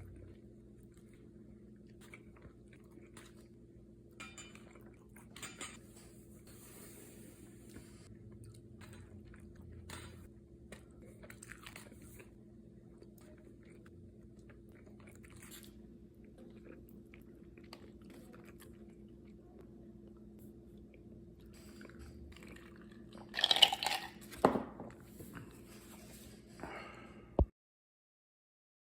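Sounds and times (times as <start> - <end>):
person eating and chewing: 0.0 - 5.5, 8.1 - 19.6, 20.8 - 24.4
faint steady hum: 0.0 - 27.5.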